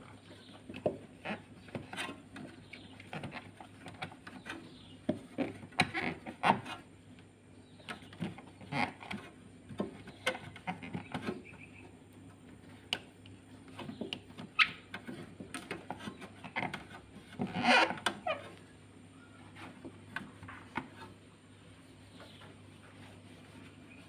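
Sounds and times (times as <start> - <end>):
rattling and rubbing: 13.7 - 18.6.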